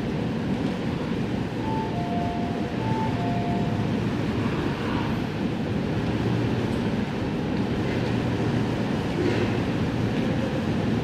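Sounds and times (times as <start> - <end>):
train humming: 0.0 - 11.0
two-tone train door chime: 1.5 - 4.2.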